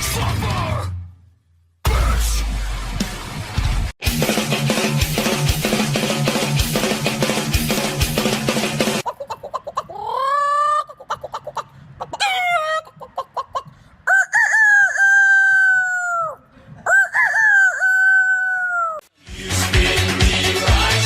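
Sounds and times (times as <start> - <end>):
rooster clucking: 8.9 - 19.1
rooster crowing: 14.1 - 19.1.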